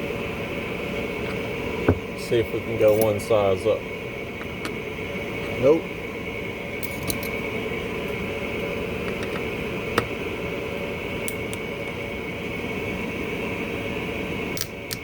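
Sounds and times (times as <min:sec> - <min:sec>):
steady machine hum: 0:00.0 - 0:15.0.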